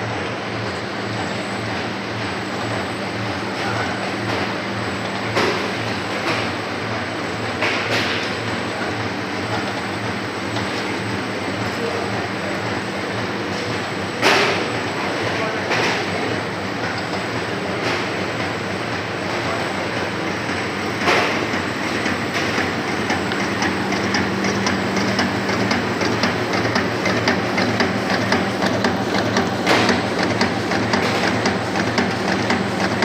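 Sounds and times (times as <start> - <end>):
machine hum: 0.0 - 33.0
rhythmic clatter of clicks: 15.2 - 33.0.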